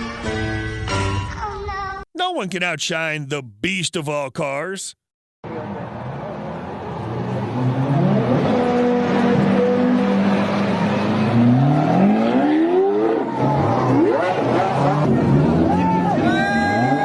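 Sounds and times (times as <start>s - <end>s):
car engine accelerating hard: 5.5s - 17.0s.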